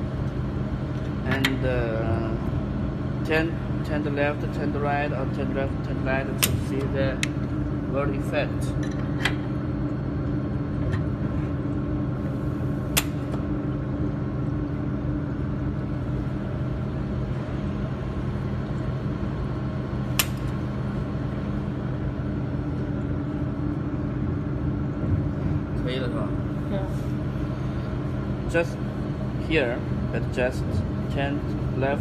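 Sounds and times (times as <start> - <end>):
machine hum: 0.0 - 32.0.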